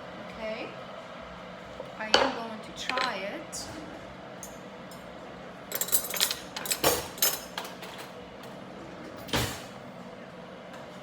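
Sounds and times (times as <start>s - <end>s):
utensils clinking against a dish: 5.7s - 8.1s.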